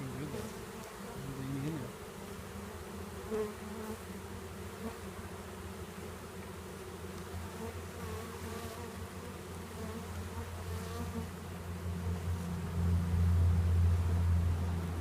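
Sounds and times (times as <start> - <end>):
bees buzzing: 0.0 - 15.0.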